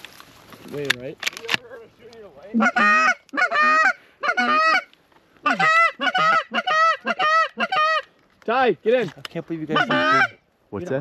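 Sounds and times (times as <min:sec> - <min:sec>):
sharp clicks: 0:00.8 - 0:02.3
goose honking: 0:02.5 - 0:08.1, 0:09.7 - 0:10.4.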